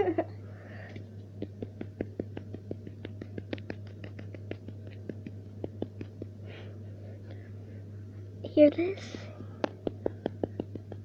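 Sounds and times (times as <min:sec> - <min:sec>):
rapid tapping on hard object: 0:01.4 - 0:06.4, 0:09.4 - 0:11.0.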